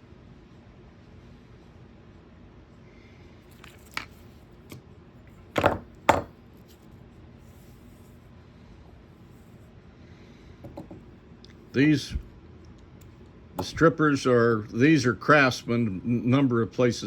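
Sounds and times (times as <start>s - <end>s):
hand tools knocking on workbench: 5.6s - 6.3s, 10.6s - 11.0s.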